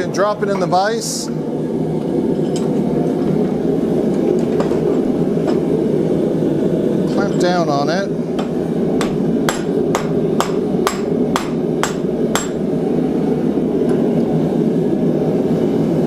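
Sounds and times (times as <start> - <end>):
hammer striking hot steel: 8.3 - 12.7.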